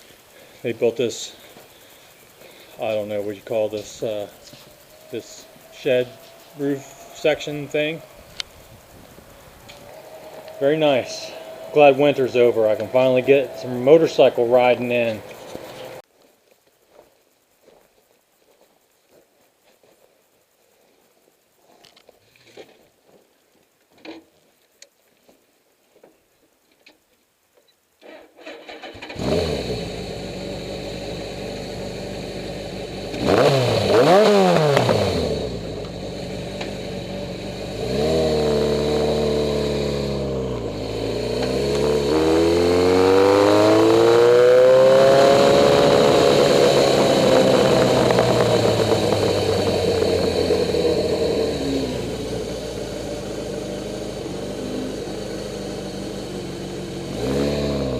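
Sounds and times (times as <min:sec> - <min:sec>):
motorcycle engine starting and idling: 0:00.0 - 0:16.0, 0:28.0 - 0:57.9
motorcycle revving and pulling away: 0:00.0 - 0:16.0, 0:28.5 - 0:57.9.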